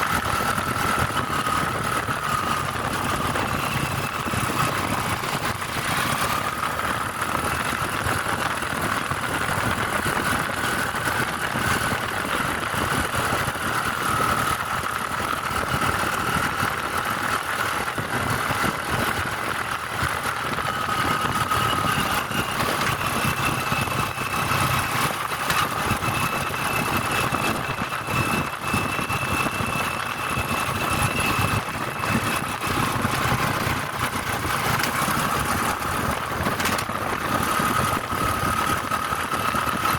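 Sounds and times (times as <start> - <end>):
car engine and road noise: 0.0 - 39.9
higher whine: 20.2 - 39.9.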